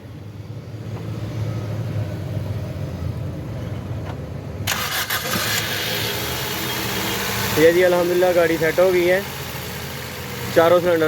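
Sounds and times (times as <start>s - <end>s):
car engine starting: 4.1s - 11.0s.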